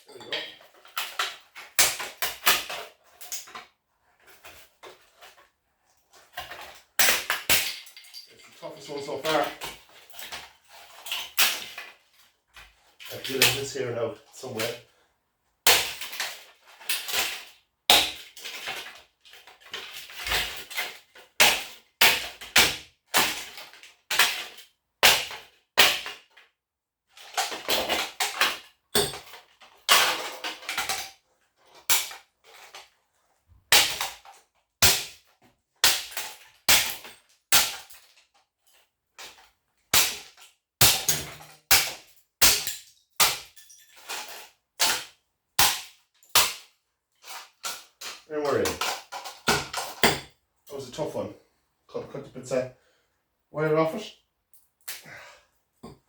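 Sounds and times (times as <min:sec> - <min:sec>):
hatchet chopping metal casing: 0:29.0 - 0:29.3, 0:40.8 - 0:43.6, 0:49.5 - 0:50.3.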